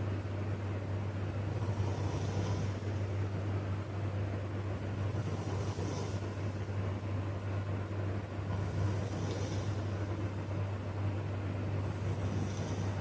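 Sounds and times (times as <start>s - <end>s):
steady low hum: 0.0s - 13.0s
person snoring: 1.5s - 3.2s, 5.0s - 6.6s, 8.5s - 10.2s, 11.8s - 13.0s.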